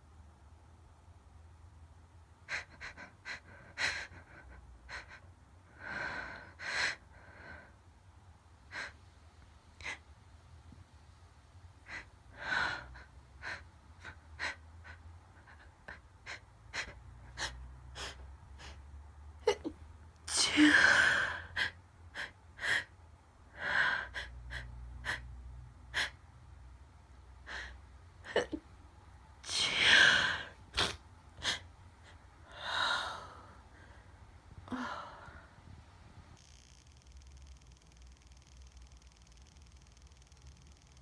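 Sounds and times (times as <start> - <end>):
woman sniffing: 29.5 - 31.6
woman gasping breaths: 31.4 - 35.8.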